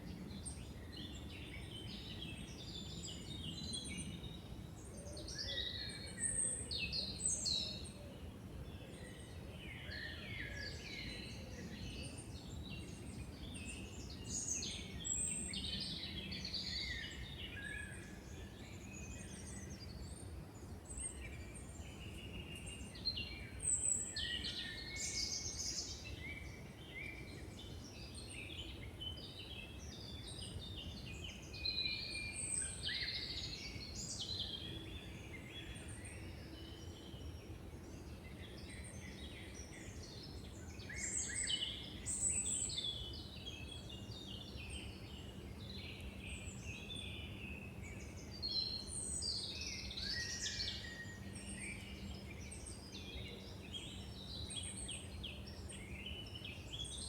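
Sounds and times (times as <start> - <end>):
songbirds singing: 0.0 - 57.0.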